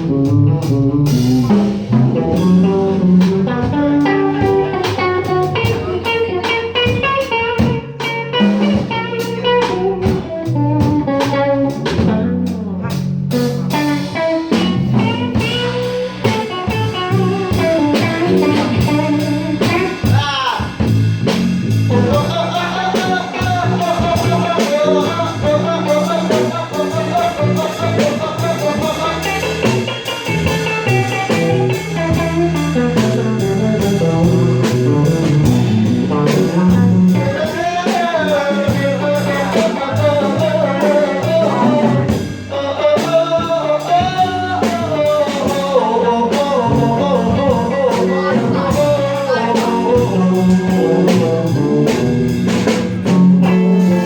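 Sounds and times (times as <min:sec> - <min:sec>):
bass guitar: 0:00.0 - 0:54.0
blues guitar lead: 0:00.0 - 0:54.0
drum kit: 0:00.0 - 0:54.0.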